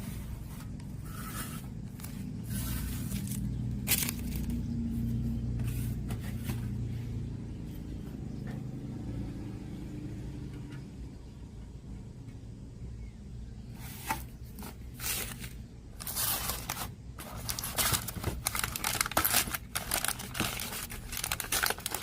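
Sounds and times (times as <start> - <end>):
handling and scraping noises: 0.0 - 8.6, 13.7 - 22.0.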